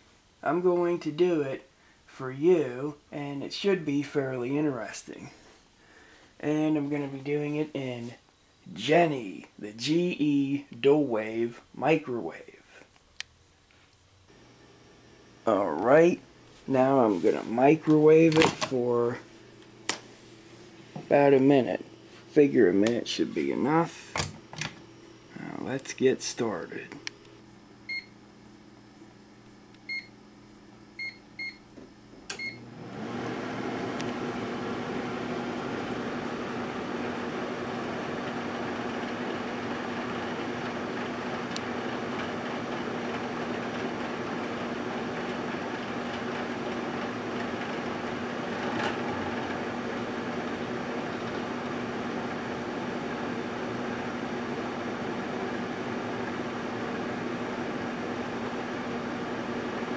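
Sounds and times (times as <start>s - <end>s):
fan running noise: 0.0s - 59.9s
microwave oven humming: 14.1s - 59.9s
microwave control panel beeps: 27.8s - 28.2s, 29.8s - 30.2s, 31.0s - 31.7s, 32.3s - 32.7s.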